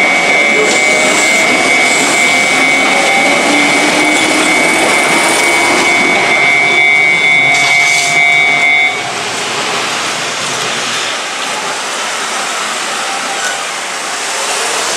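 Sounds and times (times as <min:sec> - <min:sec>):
level crossing warning bell: 0:00.0 - 0:10.0
electric train rushing past: 0:00.0 - 0:14.9.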